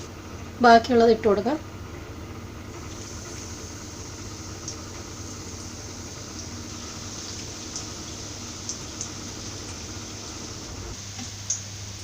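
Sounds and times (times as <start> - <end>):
low steady hum: 0.0 - 12.0
meat deep-frying in oil: 2.6 - 12.0.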